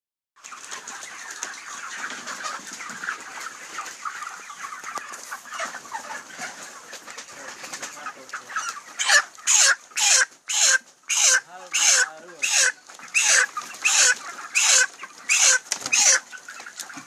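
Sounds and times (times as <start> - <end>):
chickens clucking and calling: 0.4 - 17.0.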